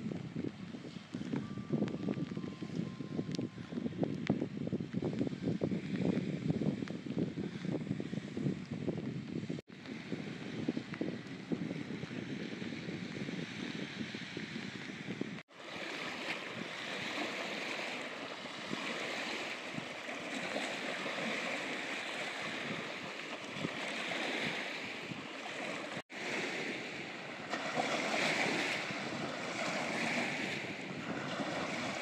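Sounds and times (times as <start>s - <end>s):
wind on microphone: 0.0s - 32.0s
small waves lapping: 9.7s - 32.0s.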